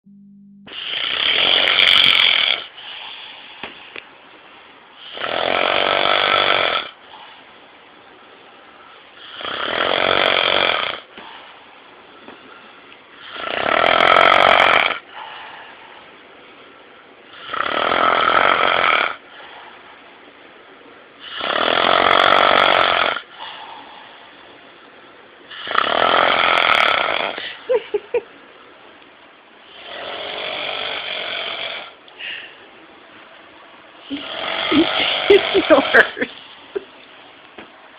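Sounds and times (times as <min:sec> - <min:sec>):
person snoring: 0:00.7 - 0:02.8, 0:05.0 - 0:07.0, 0:09.2 - 0:11.1, 0:13.2 - 0:15.0, 0:17.3 - 0:19.2, 0:21.2 - 0:23.8, 0:25.5 - 0:27.7, 0:29.7 - 0:32.0, 0:34.0 - 0:36.2
quiet breathing: 0:02.3 - 0:04.3, 0:11.0 - 0:13.5, 0:15.0 - 0:17.6, 0:19.1 - 0:21.5, 0:23.2 - 0:25.7, 0:31.7 - 0:33.1.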